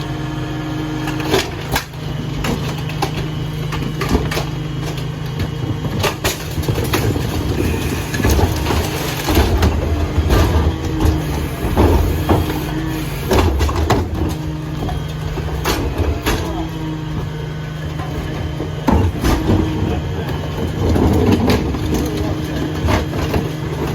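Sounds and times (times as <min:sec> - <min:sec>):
garbage truck engine and hydraulic hum: 0:00.0 - 0:23.9.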